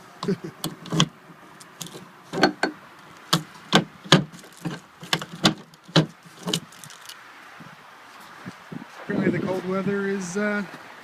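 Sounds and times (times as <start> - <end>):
sharp knocks and bangs: 2.3 - 6.6.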